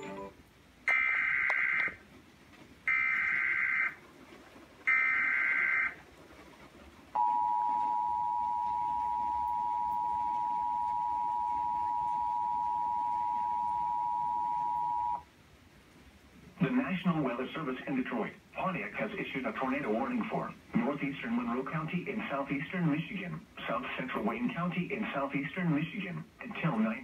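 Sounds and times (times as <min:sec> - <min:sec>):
steady two-tone attention signal: 0:07.2 - 0:15.2.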